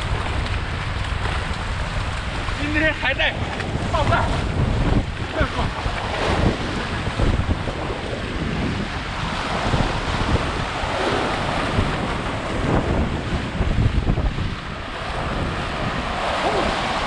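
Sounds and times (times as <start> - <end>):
strong wind buffeting microphone: 0.0 - 17.0
surf breaking on shore: 0.0 - 17.0.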